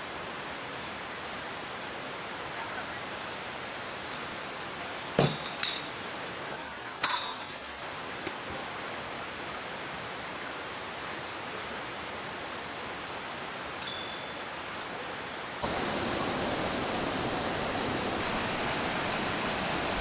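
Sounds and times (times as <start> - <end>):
mountain stream rushing: 14.5 - 20.0.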